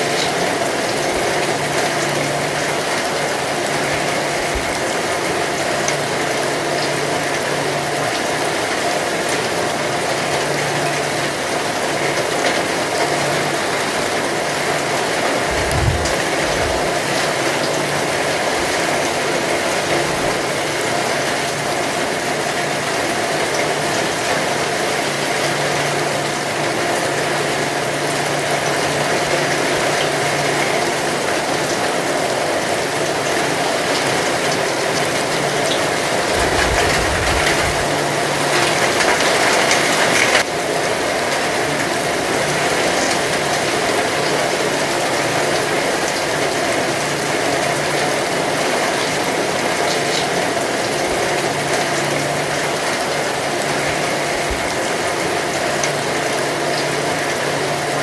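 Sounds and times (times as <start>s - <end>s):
heavy rain falling: 0.0s - 58.0s
low rumble: 15.5s - 16.9s, 36.3s - 38.3s.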